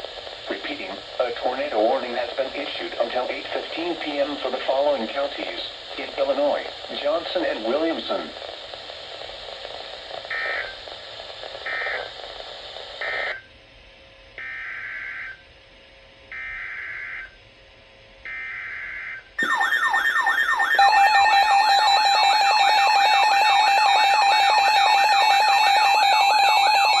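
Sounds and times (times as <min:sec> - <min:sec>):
radio hiss: 0:00.0 - 0:13.5, 0:19.4 - 0:27.0
loud warbling alert tone: 0:19.4 - 0:26.0
buzzy data tone bursts: 0:19.4 - 0:27.0.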